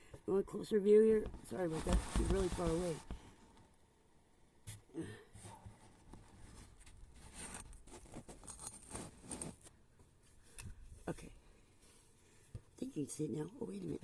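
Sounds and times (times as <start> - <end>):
handling rustles and scrapes: 1.1 - 3.7, 4.7 - 12.8.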